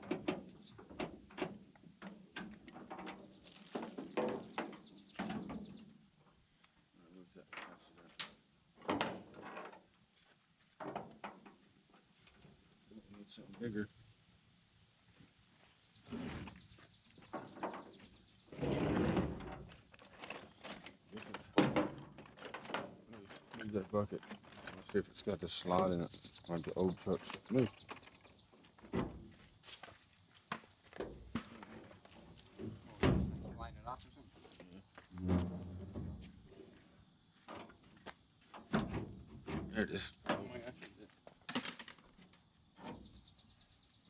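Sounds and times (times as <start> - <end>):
metal scraping rattle: 17.4 - 28.3
tools and metal parts clattering: 18.6 - 28.4, 41.4 - 42.4.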